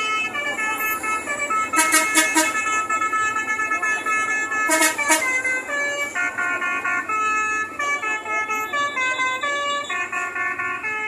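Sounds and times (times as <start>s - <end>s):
bus musical horn tune: 0.0s - 11.0s.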